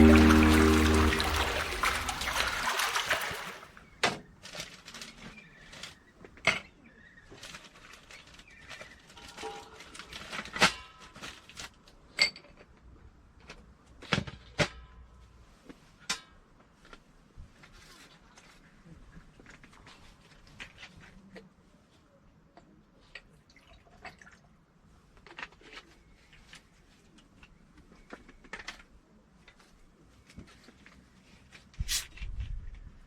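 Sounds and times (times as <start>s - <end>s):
background music: 0.0s - 2.1s.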